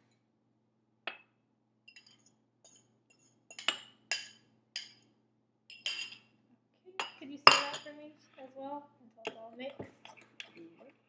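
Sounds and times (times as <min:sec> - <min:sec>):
kitchenware clinking on glass bowl: 0:01.9 - 0:05.0, 0:05.7 - 0:06.3, 0:07.0 - 0:07.9.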